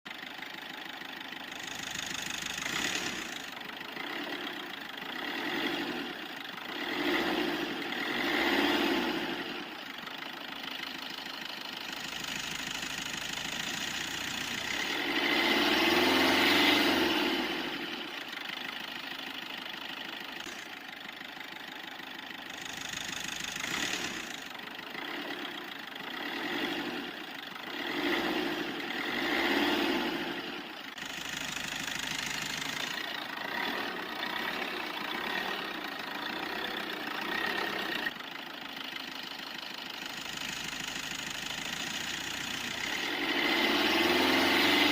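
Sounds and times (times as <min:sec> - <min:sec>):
car engine revving: 0:01.5 - 0:04.5, 0:05.1 - 0:09.6, 0:12.0 - 0:18.1, 0:22.5 - 0:38.1, 0:40.3 - 0:44.9.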